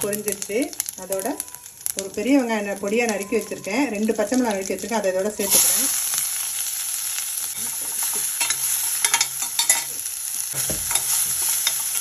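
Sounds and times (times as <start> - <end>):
onion sizzling in hot oil: 0.0 - 12.0
spoon scraping against pan: 0.0 - 12.0
dull knock: 10.6 - 10.9.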